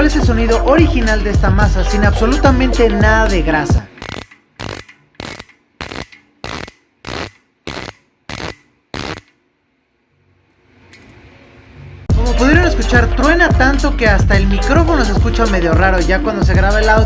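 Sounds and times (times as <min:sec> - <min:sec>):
bicycle freehub clicking: 0:03.9 - 0:09.4.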